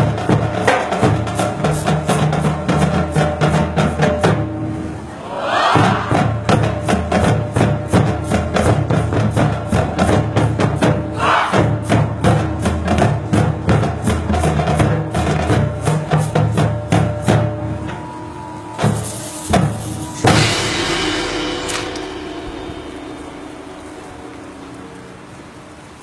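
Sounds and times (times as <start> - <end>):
rapid drum strikes: 0.0 - 4.5, 5.5 - 18.0, 18.8 - 25.4
marching band playing: 0.0 - 26.0
sustained low brass tones: 17.6 - 26.0.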